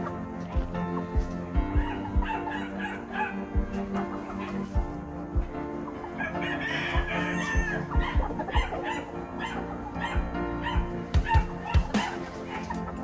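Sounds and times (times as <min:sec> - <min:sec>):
background music: 0:00.0 - 0:13.0
rooster crowing: 0:06.2 - 0:07.9.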